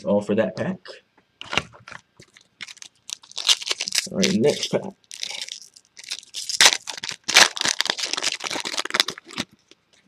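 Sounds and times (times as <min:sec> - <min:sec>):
foil wrapper tearing and crinkling: 0:01.5 - 0:09.8.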